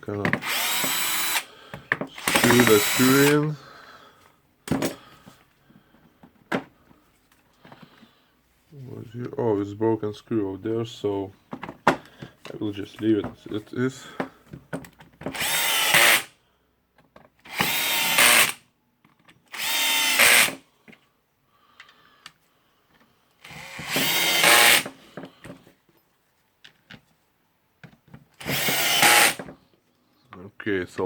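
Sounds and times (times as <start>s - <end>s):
power screwdriver running: 0.4s - 1.5s, 2.2s - 3.4s, 15.3s - 16.3s, 17.5s - 18.6s, 19.5s - 20.6s, 23.4s - 24.9s, 28.4s - 29.5s.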